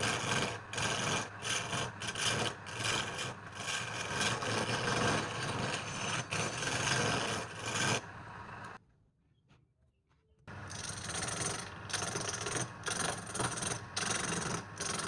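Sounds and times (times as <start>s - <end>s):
lathe tool scraping spinning wood: 0.0s - 8.8s, 10.5s - 15.0s.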